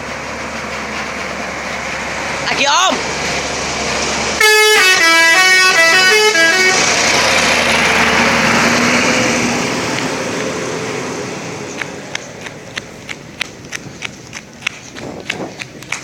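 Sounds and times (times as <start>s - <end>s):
multi-trumpet air horn tune: 4.4s - 6.9s
broad rushing noise: 5.7s - 16.0s.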